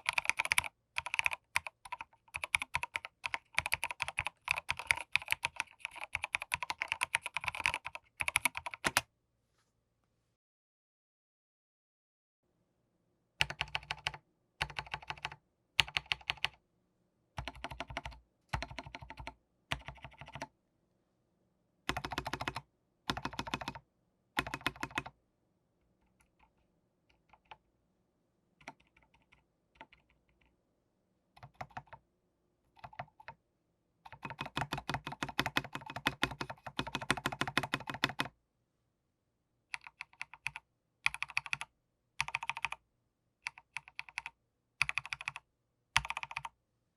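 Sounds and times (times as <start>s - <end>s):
mechanical keyboard typing: 0.0s - 9.0s, 13.4s - 16.6s, 17.4s - 20.5s, 21.9s - 23.8s, 24.4s - 25.1s, 26.2s - 27.6s, 28.6s - 30.5s, 31.4s - 32.0s, 32.7s - 33.4s, 34.1s - 38.3s, 39.8s - 42.8s, 43.5s - 45.4s, 46.0s - 46.5s.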